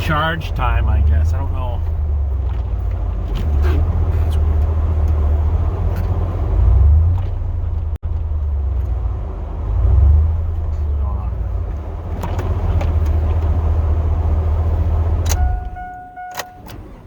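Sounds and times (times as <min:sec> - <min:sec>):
truck engine and road rumble: 0:00.0 - 0:17.0.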